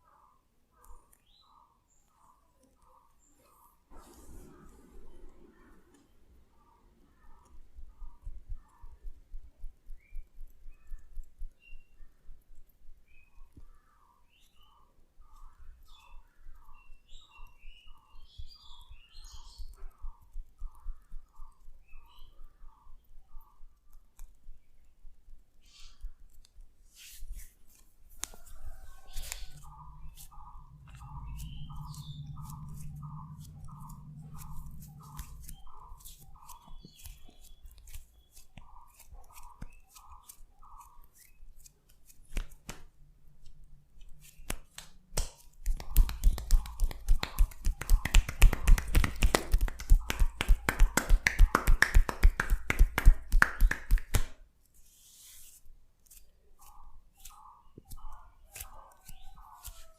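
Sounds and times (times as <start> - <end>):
hands rubbing skin: 25.7 - 59.9
rhythmic hand slaps on skin: 29.2 - 40.4, 41.2 - 43.0, 44.4 - 54.4.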